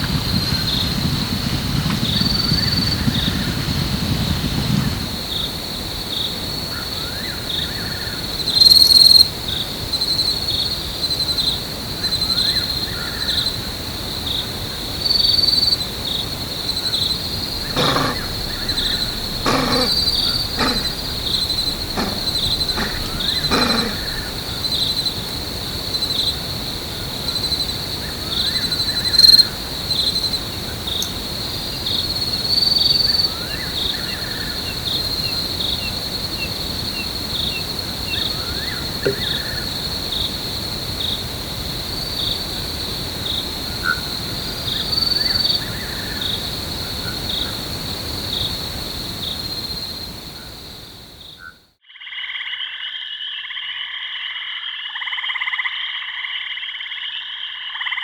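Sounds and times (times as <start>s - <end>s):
insect chorus buzzing: 0.0s - 51.5s
faint chirps: 8.6s - 9.3s, 16.8s - 40.4s
animal giving short loud calls: 17.6s - 24.4s.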